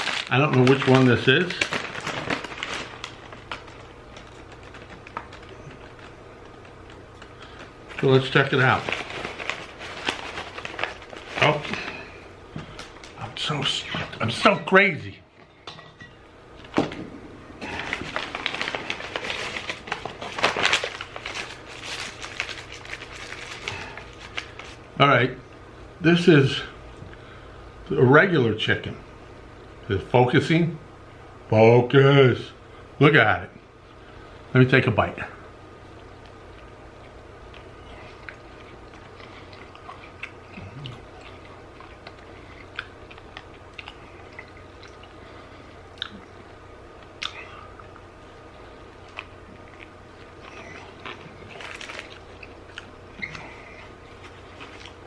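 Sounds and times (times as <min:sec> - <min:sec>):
paper wrapper crinkling: 0:00.0 - 0:14.1, 0:17.6 - 0:24.9, 0:49.0 - 0:55.0
man chewing crunchy food: 0:36.1 - 0:48.2, 0:49.0 - 0:55.0
wet mouth sounds: 0:45.9 - 0:46.4, 0:47.2 - 0:48.1.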